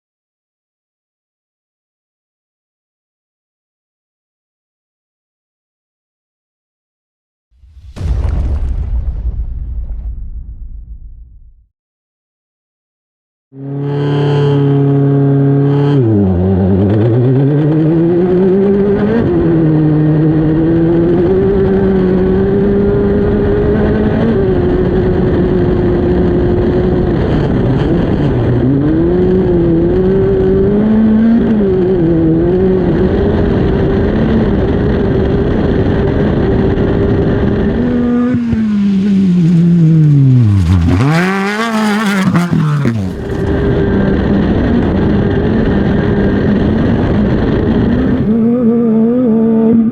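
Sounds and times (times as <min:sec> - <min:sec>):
race car engine revving: 0:35.8 - 0:49.9.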